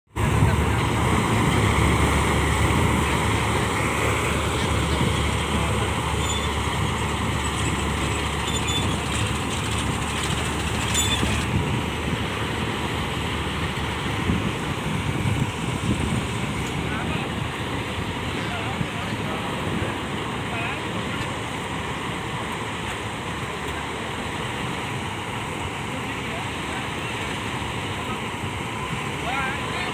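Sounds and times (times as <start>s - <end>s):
combine harvester rumbling: 0.1s - 29.9s
high-pitched squeaks: 6.1s - 6.6s, 7.4s - 11.4s.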